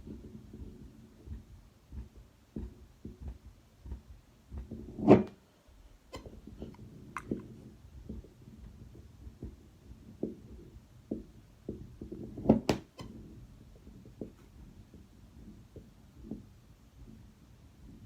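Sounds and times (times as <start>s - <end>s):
heartbeat thuds through stethoscope: 0.0s - 5.0s.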